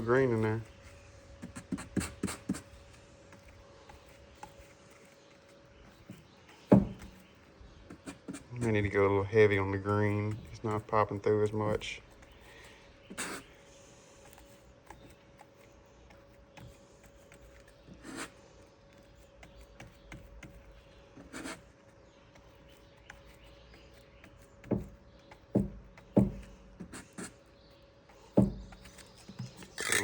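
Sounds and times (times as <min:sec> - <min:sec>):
soft knocks: 0:06.7 - 0:07.2
rustling scrapes: 0:28.9 - 0:30.0.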